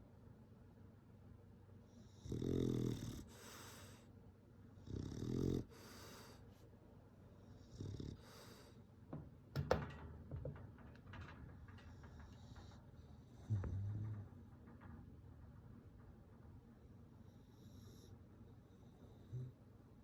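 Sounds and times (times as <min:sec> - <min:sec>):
dog snoring: 0:02.0 - 0:04.0, 0:04.8 - 0:06.4, 0:07.6 - 0:08.6, 0:13.4 - 0:14.3, 0:18.8 - 0:19.6.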